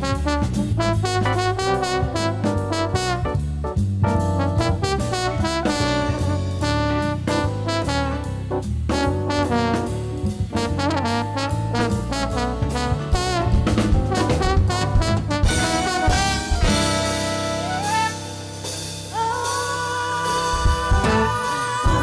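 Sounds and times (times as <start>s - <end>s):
drum kit: 0.0s - 22.0s
live band with horns: 0.0s - 22.0s
saxophone line: 15.4s - 22.0s.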